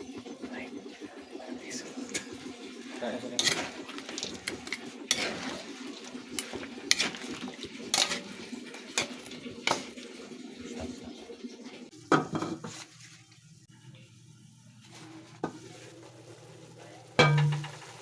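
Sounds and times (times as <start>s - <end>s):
metal utensils clinking on dishes: 2.1s - 10.9s, 17.2s - 18.0s.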